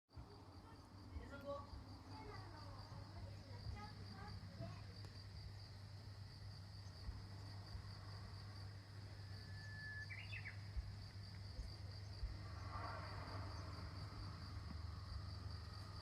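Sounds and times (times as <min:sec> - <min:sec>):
bird singing whistled song: 0:09.4 - 0:10.6.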